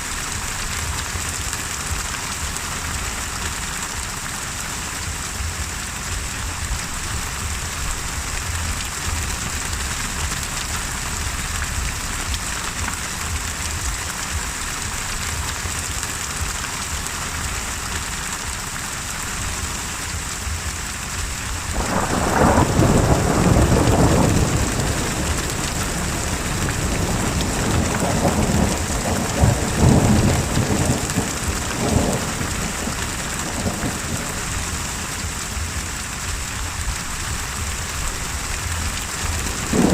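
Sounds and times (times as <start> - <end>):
heavy rain: 0.0 - 39.9
thunder rumbling: 21.3 - 39.9.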